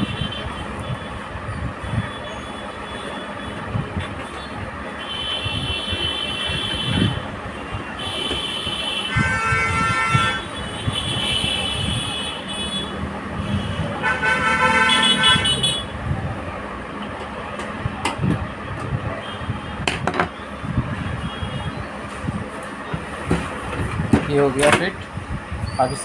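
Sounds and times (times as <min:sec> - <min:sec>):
vehicle horns honking: 0:00.0 - 0:01.2, 0:01.8 - 0:16.0
low traffic rumble: 0:00.0 - 0:26.0.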